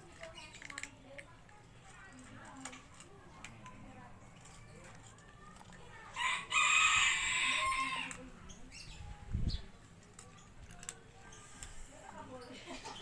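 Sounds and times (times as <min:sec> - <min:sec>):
rooster crowing: 0:06.2 - 0:08.1.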